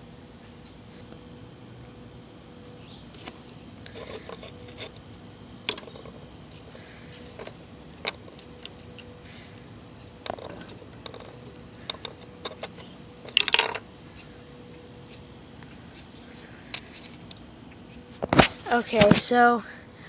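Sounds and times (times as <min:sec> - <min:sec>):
metal parts clattering: 0:03.9 - 0:05.0, 0:10.2 - 0:13.8.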